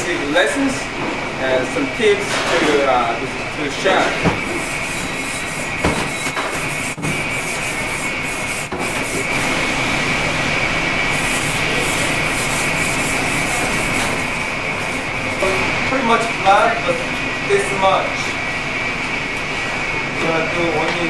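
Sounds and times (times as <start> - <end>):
knife scraping on whetstone: 4.5 - 9.3.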